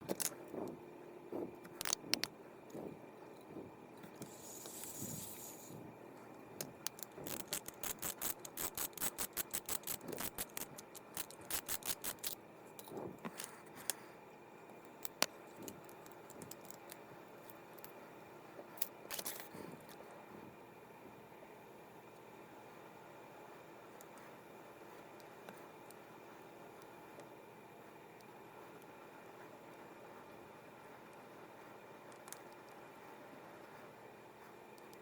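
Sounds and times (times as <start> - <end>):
fishing reel clicking: 6.9 - 12.4.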